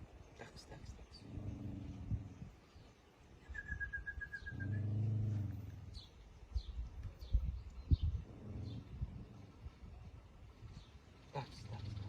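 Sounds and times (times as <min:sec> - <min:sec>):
small birds chirping: 0:00.0 - 0:12.0
dog growling: 0:01.2 - 0:02.3, 0:04.5 - 0:05.8.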